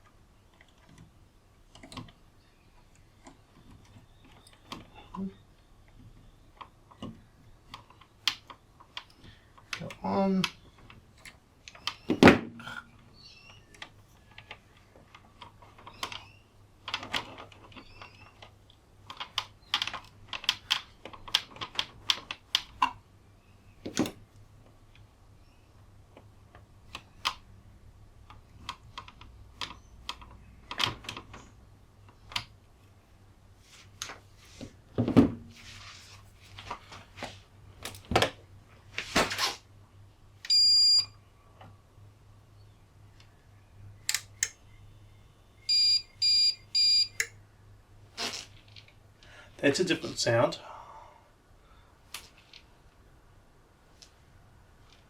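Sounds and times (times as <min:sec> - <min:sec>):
high electronic beep: 0:40.5 - 0:41.1, 0:45.7 - 0:47.2.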